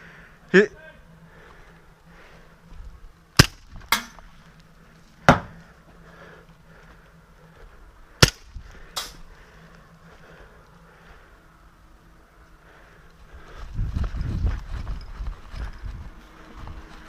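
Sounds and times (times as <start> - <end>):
airsoft gun shots: 3.4 - 4.1, 8.2 - 9.2.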